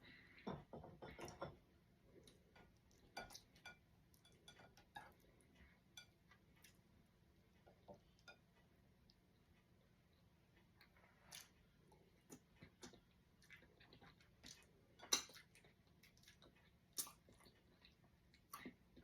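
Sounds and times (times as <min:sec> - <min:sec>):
person eating by hand: 0:07.5 - 0:19.0.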